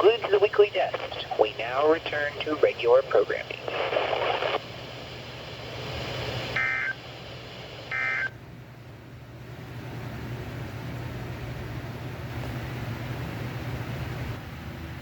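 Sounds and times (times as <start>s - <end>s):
radio hiss: 0.0s - 8.4s
buzzy digital data tones: 6.6s - 7.0s.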